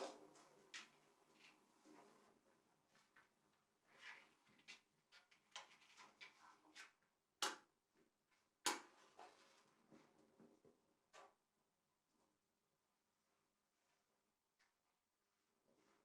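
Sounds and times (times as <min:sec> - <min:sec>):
faint clicks and scrapes: 0:00.0 - 0:07.1.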